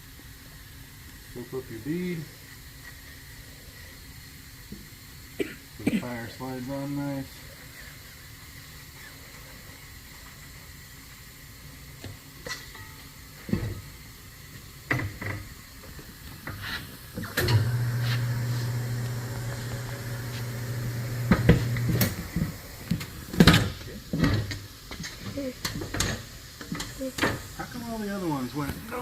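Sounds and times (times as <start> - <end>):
tire changer motor humming: 17.2 - 23.4.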